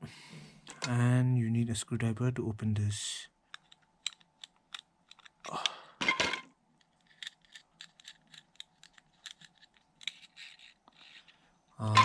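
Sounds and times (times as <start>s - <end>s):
small metal clicks and scrapes: 3.5s - 5.5s, 6.8s - 11.4s.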